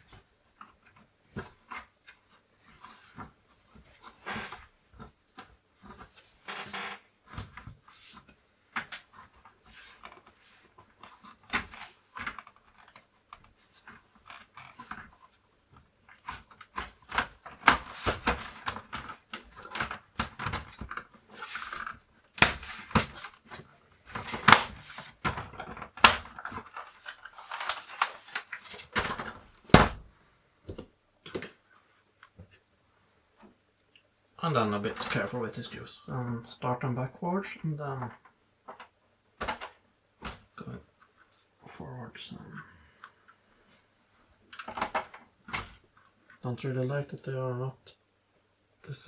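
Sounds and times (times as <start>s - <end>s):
plastic case clicks and knocks: 38.7s - 40.5s.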